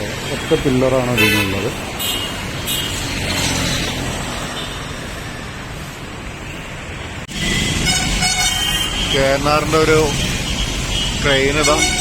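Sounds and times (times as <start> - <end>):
road traffic rumble: 0.0 - 12.0
vehicle horn: 7.3 - 9.4, 10.2 - 12.0.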